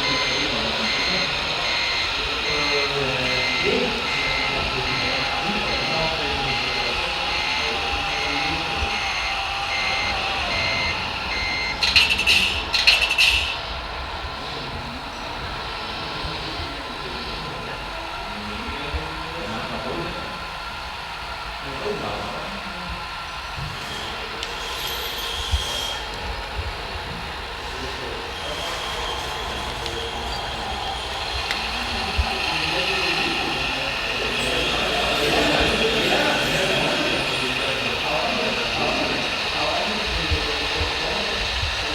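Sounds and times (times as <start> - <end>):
reversing beeper short beeps: 0.0 - 13.7
harsh bursts of noise: 0.0 - 18.6
electric drive hum: 0.0 - 41.9
electric motors and hydraulics whining: 0.0 - 41.9.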